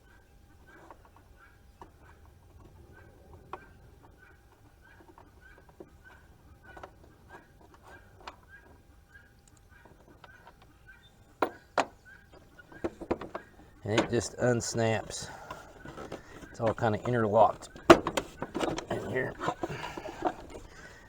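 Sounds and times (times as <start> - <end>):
plastic parts clicking and tapping: 11.4 - 21.0.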